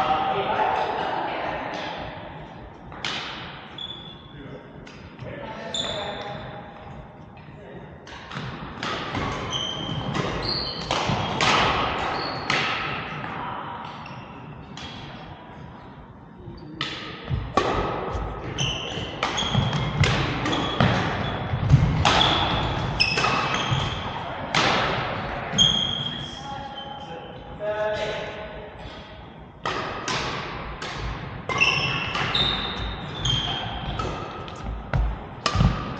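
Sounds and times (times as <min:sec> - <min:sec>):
rackets striking shuttlecock: 0:02.9 - 0:03.6, 0:08.1 - 0:14.0, 0:16.8 - 0:25.0, 0:29.6 - 0:35.9
shoes squeaking on floor: 0:03.7 - 0:04.2, 0:05.6 - 0:06.2, 0:09.4 - 0:11.3, 0:12.0 - 0:12.5, 0:18.5 - 0:21.5, 0:22.1 - 0:24.0, 0:25.6 - 0:27.0, 0:31.5 - 0:34.0.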